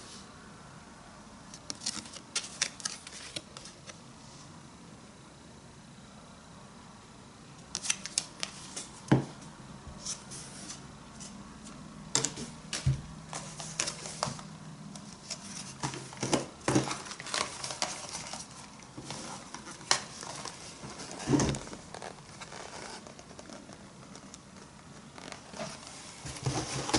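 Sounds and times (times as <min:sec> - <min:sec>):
objects and packaging handled: 0:01.5 - 0:04.0, 0:12.2 - 0:26.9.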